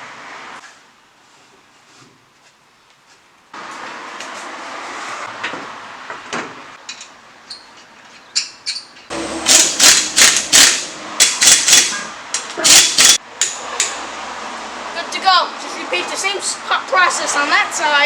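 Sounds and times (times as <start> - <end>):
clicks and handling noise: 6.8 - 14.0
pneumatic impact wrench bursts: 9.1 - 13.2.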